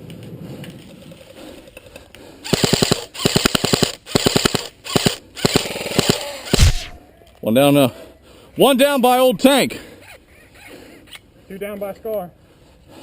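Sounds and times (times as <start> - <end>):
airsoft rifle full-auto bursts: 2.5 - 7.0.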